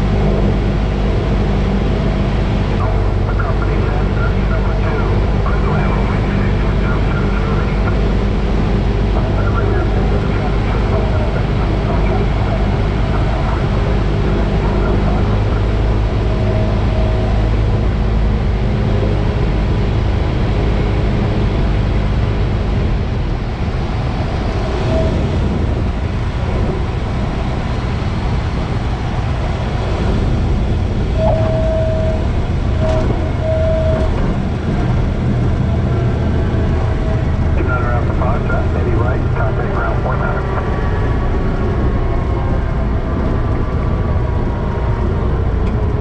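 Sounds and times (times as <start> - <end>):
propeller plane engine running: 0.0 - 46.0
short tones: 31.1 - 34.4.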